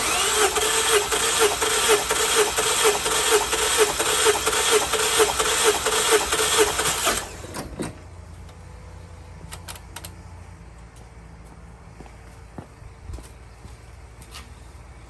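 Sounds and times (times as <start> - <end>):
car engine cranking on starter: 0.0 - 8.1.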